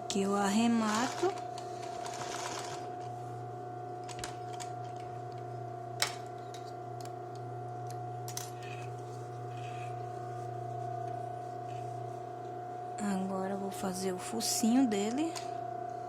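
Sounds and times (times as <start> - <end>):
sewing machine motor hum: 0.0 - 3.2.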